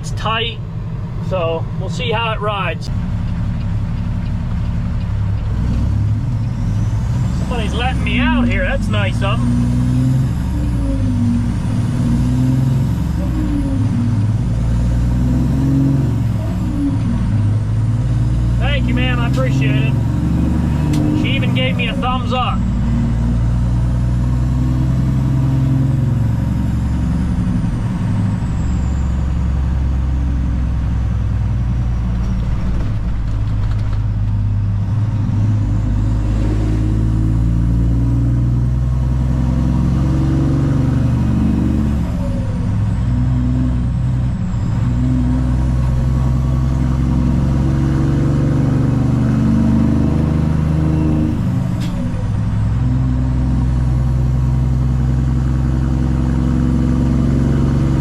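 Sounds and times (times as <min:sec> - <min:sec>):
diesel truck pulling away under load: 0:02.9 - 0:58.0.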